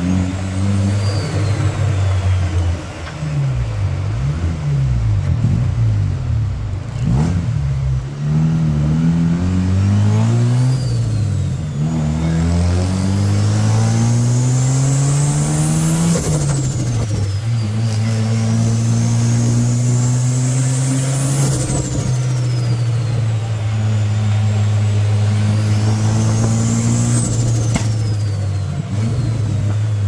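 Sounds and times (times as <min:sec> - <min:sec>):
rotary engine accelerating: 0:00.0 - 0:30.0.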